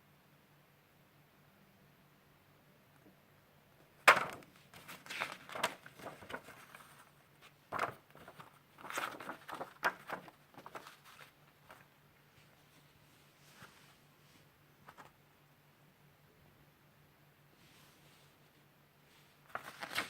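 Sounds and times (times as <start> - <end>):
paper rustling and light knocks: 4.1 - 15.2, 19.2 - 20.0.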